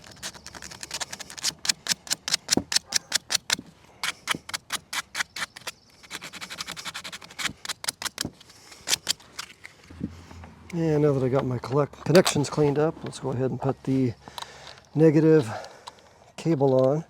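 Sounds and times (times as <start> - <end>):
sandpaper scrubbing metal: 4.1 - 8.1.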